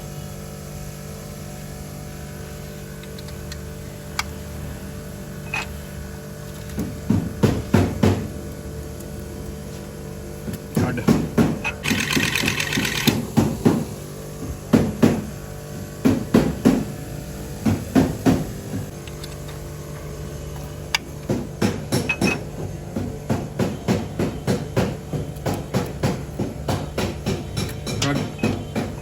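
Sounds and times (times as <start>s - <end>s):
hammer blows on metal car part: 21.3s - 29.0s.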